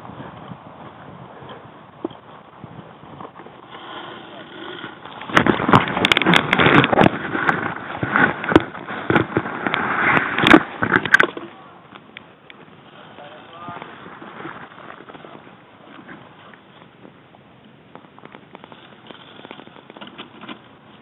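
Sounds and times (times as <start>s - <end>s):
loud rustling noise: 2.2s - 11.4s, 12.6s - 16.8s, 18.4s - 21.0s.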